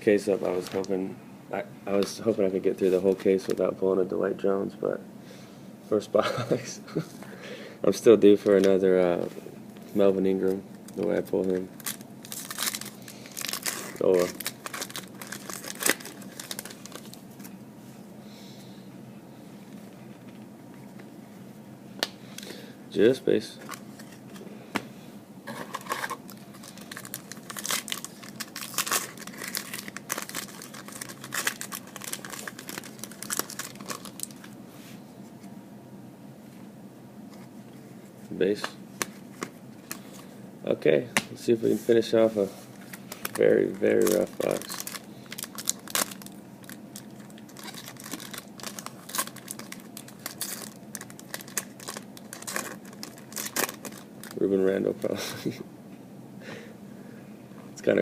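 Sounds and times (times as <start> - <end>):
cards rustling: 10.4 - 17.5, 25.5 - 34.6, 41.6 - 55.0
wrapper crinkling and tearing: 10.9 - 17.4, 25.5 - 34.6, 42.8 - 54.5.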